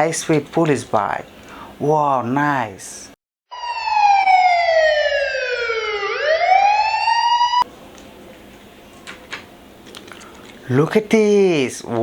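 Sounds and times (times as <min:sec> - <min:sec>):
electronic police siren wail: 0:03.5 - 0:07.7.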